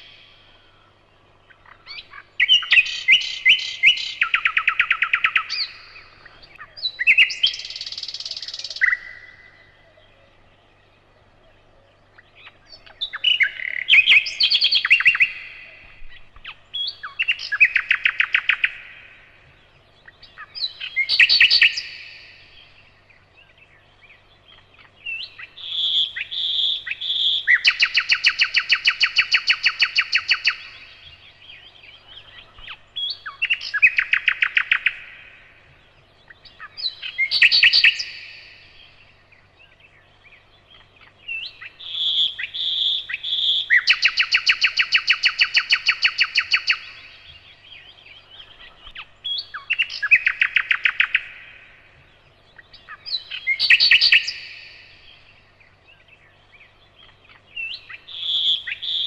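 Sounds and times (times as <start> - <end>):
nightingale singing: 0.0 - 59.0.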